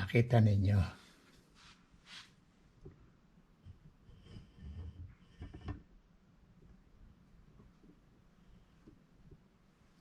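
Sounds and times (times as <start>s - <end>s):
faint low hum: 2.4s - 10.0s.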